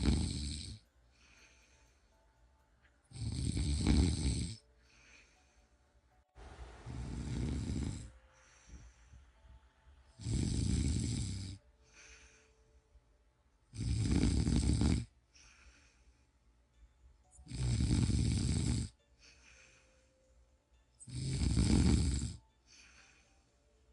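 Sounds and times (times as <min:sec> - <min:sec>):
person snoring: 0:00.0 - 0:01.5, 0:03.1 - 0:05.2, 0:06.8 - 0:08.7, 0:10.2 - 0:12.4, 0:13.7 - 0:15.8, 0:17.4 - 0:19.7, 0:21.0 - 0:23.2
soft breaths: 0:00.0 - 0:23.9.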